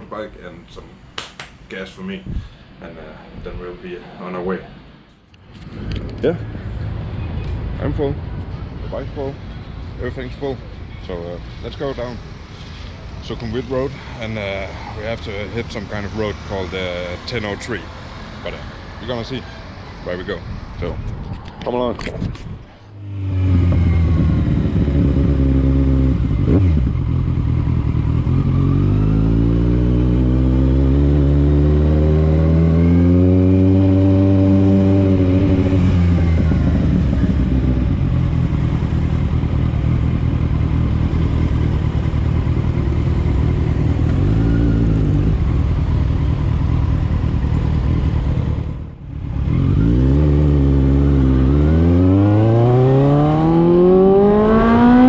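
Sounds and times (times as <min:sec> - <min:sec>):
motorbike engine revving: 0:23.0 - 0:55.0.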